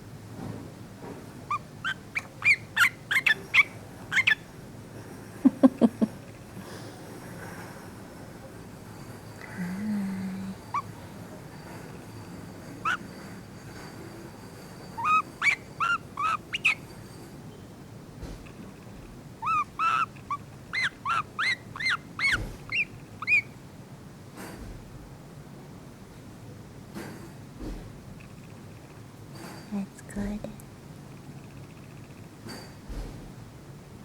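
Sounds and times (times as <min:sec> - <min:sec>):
bird chirping: 0:01.5 - 0:04.5, 0:12.7 - 0:13.2, 0:14.8 - 0:17.8, 0:19.4 - 0:23.6.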